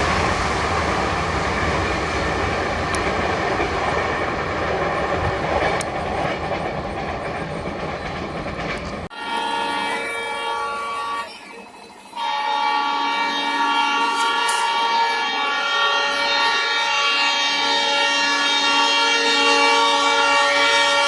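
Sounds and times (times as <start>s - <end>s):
train rumble and wheel clatter: 0.0s - 21.0s
locomotive multi-tone horn: 9.1s - 21.0s.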